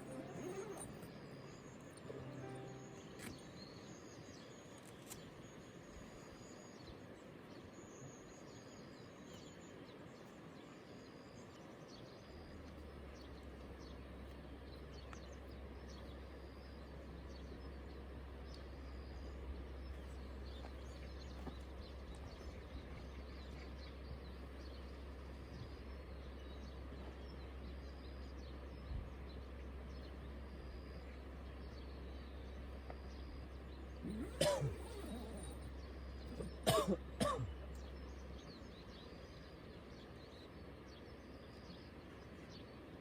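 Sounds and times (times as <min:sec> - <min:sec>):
faint high chirps: 0:00.0 - 0:04.9, 0:32.2 - 0:37.5.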